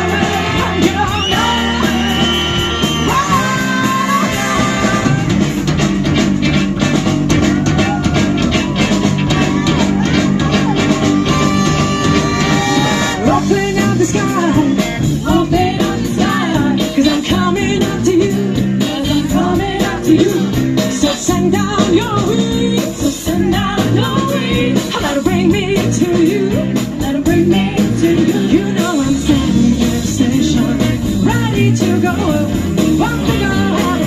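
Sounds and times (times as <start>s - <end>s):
person singing: 0.0s - 5.4s, 9.4s - 34.0s
driving dance beat: 0.0s - 18.5s
guitar: 0.0s - 34.0s
soul band playing live: 0.0s - 34.0s.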